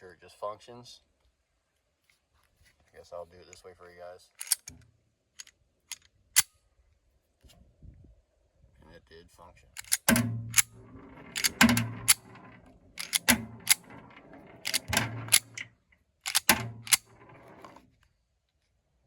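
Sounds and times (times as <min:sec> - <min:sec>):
pistol slide racking clacks: 0:04.4 - 0:04.8, 0:09.8 - 0:17.8.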